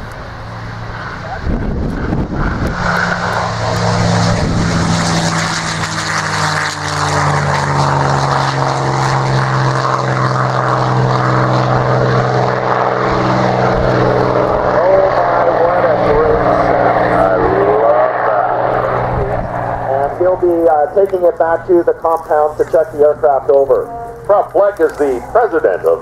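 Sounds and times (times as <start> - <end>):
propeller plane engine passing: 0.0 - 26.0.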